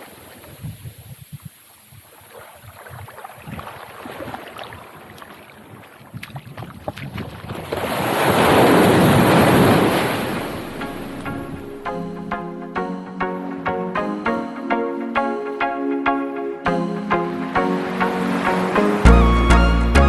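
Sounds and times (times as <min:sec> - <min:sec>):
sea surf on a beach: 0:00.0 - 0:12.3, 0:16.2 - 0:19.9
wave breaking and washing in: 0:07.1 - 0:20.0.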